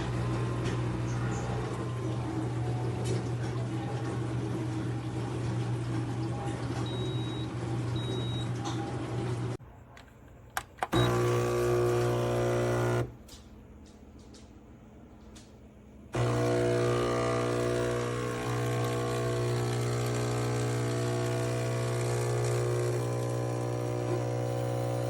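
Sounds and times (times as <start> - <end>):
espresso machine pump buzzing: 10.8 - 13.2, 16.2 - 25.0.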